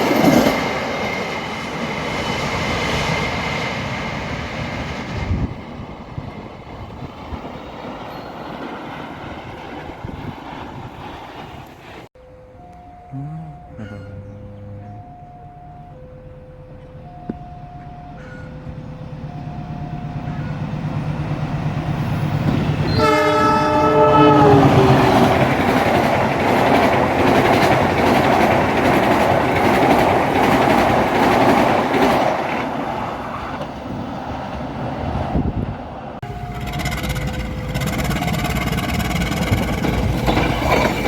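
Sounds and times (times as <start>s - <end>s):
train passing: 0.0s - 41.0s
two-tone crossing warning signal: 12.2s - 32.4s, 36.2s - 41.0s
train horn: 22.8s - 25.8s.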